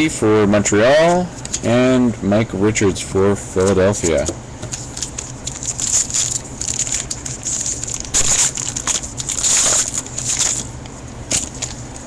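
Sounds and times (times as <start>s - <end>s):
low steady hum: 0.0s - 12.0s
cards being handled: 3.6s - 12.0s
foil wrapper crinkling and tearing: 4.7s - 12.0s.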